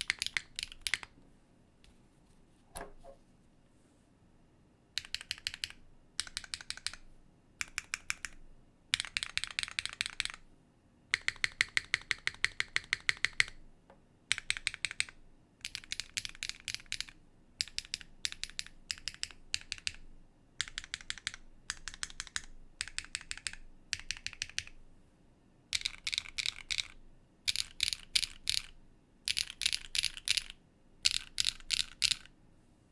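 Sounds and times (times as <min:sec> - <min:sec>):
typing on a mechanical keyboard: 0:00.0 - 0:01.1, 0:05.0 - 0:07.0, 0:07.6 - 0:10.4, 0:11.1 - 0:13.6, 0:14.3 - 0:20.0, 0:20.6 - 0:24.8, 0:25.7 - 0:32.3.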